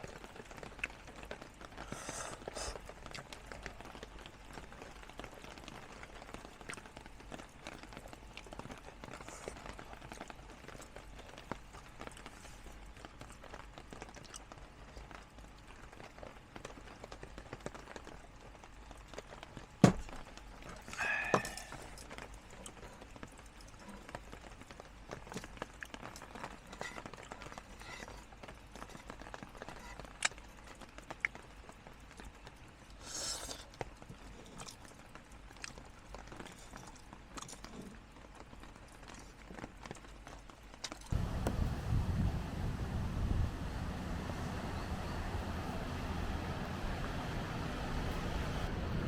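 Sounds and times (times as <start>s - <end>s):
rain dripping on a tarp: 0.0s - 49.0s
faint steady hiss: 40.5s - 49.0s.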